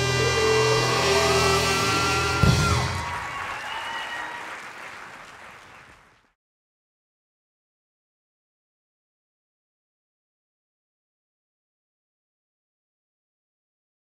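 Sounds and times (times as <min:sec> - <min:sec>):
audience applause: 0:00.0 - 0:06.4.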